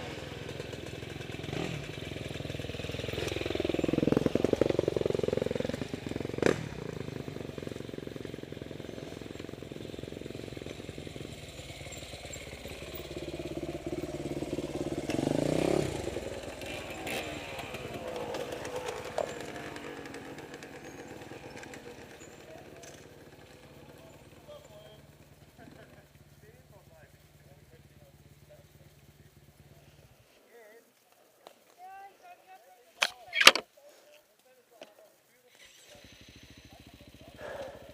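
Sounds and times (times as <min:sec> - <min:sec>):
motorcycle engine revving: 0:00.0 - 0:30.3, 0:35.5 - 0:37.9.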